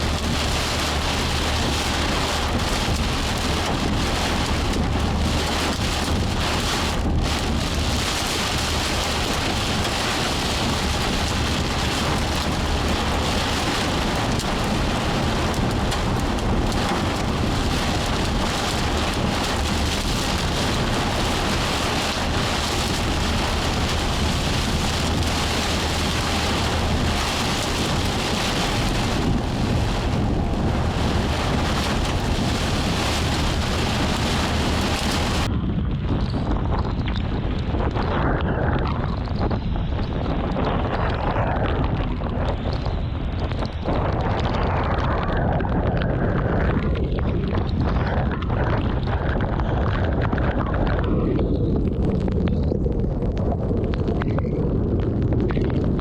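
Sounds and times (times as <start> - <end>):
heavy rain falling: 0.0 - 35.5
low rumble: 0.0 - 56.0.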